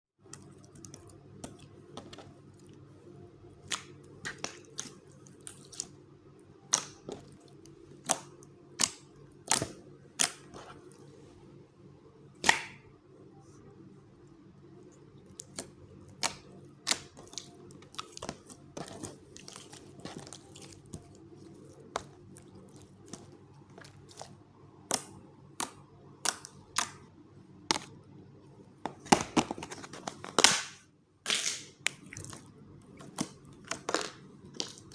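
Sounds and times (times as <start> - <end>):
low steady hum: 0.2 - 34.9.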